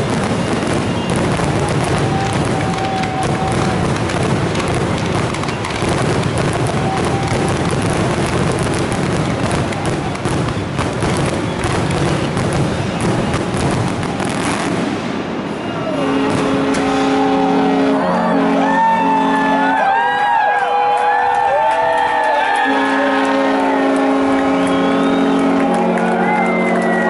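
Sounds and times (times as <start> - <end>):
fireworks crackling and banging: 0.0 - 19.0, 21.1 - 26.9
boat horns sounding: 15.5 - 20.0, 22.6 - 27.0
whistle glides: 23.4 - 27.0.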